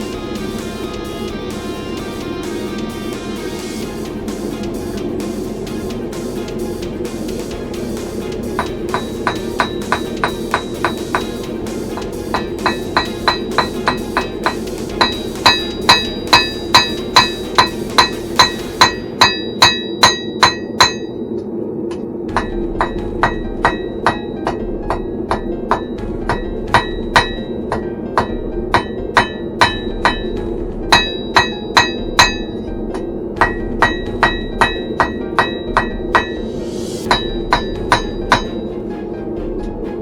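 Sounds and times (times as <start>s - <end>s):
forge roaring: 0.0s - 40.0s
hammer ringing on anvil: 8.6s - 21.4s, 22.3s - 38.7s.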